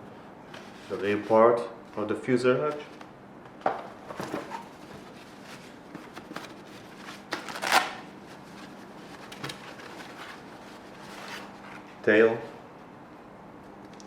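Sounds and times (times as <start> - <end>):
packaging rustling and crinkling: 4.0 - 11.9.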